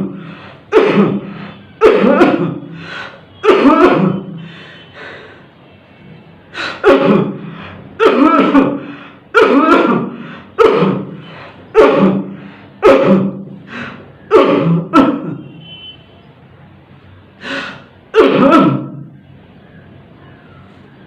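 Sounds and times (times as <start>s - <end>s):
person coughing harshly: 0.0s - 4.5s, 6.6s - 15.6s, 17.4s - 19.1s.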